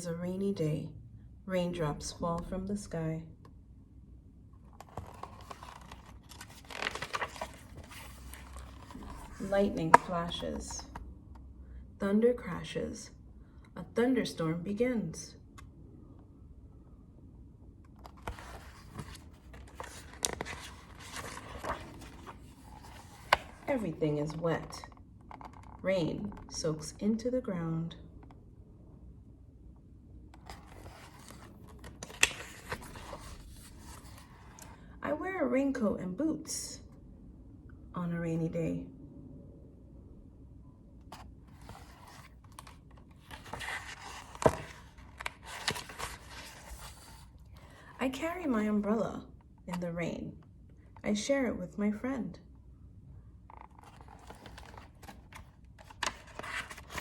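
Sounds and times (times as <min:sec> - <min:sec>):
paper pages rustling and scraping: 0:04.7 - 0:11.0, 0:18.0 - 0:24.4, 0:30.4 - 0:34.8, 0:41.1 - 0:47.8, 0:53.5 - 0:57.0.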